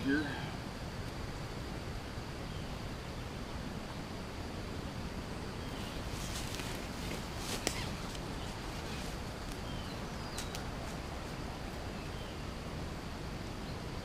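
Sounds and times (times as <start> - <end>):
steady hiss: 0.0 - 14.0
faint bird chirps: 2.4 - 4.1, 7.5 - 10.7.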